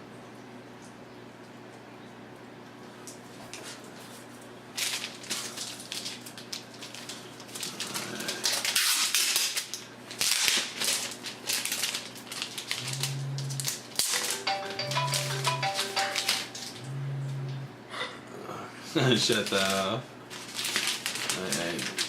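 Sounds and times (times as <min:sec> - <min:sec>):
plastic packaging crinkling: 0:04.7 - 0:16.8, 0:19.1 - 0:22.0.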